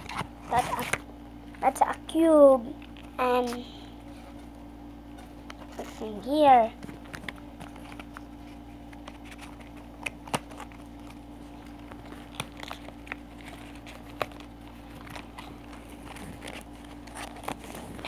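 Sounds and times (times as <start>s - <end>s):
steady low hum: 0.0s - 18.0s
toy packaging crinkling: 9.0s - 18.0s.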